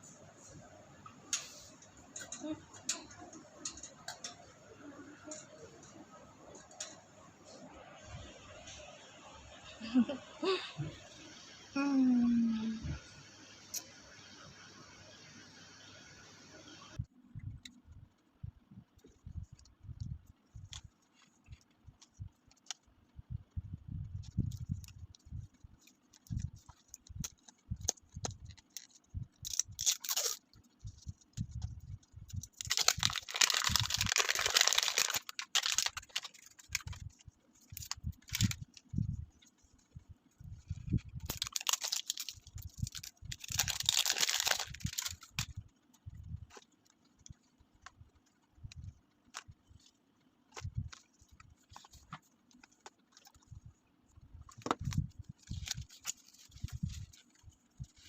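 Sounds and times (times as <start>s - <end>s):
packaging crinkling and tearing: 25.5s - 31.6s, 32.3s - 38.9s, 40.9s - 45.7s, 54.5s - 58.0s.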